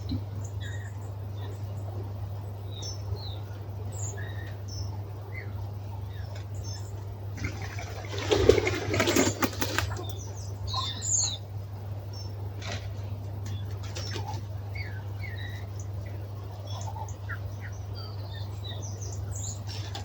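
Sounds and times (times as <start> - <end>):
small birds chirping: 0.0 - 20.0
wings flapping in branches: 7.4 - 10.2, 12.5 - 14.6.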